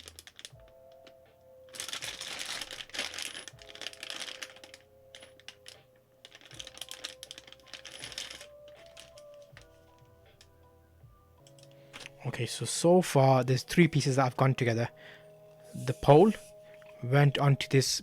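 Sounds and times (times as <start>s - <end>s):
metal parts clicking and rattling: 0.0s - 1.1s, 1.7s - 10.5s, 11.4s - 12.2s
background music: 0.0s - 18.0s.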